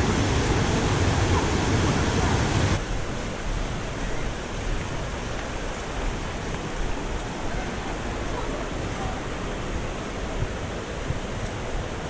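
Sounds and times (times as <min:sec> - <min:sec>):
river water rushing over rapids: 0:00.0 - 0:12.0.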